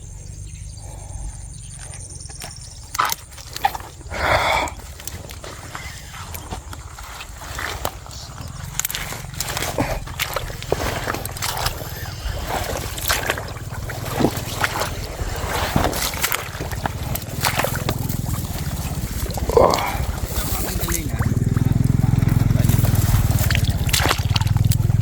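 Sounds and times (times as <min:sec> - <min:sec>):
water sloshing and splashing: 0:01.8 - 0:25.0
steady low rumble: 0:06.2 - 0:25.0.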